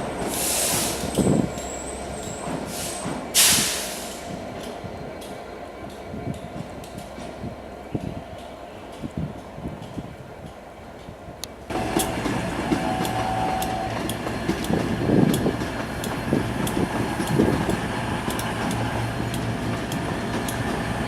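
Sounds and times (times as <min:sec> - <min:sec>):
locomotive low hum: 0:00.0 - 0:21.0
sharp clicks: 0:13.0 - 0:20.7.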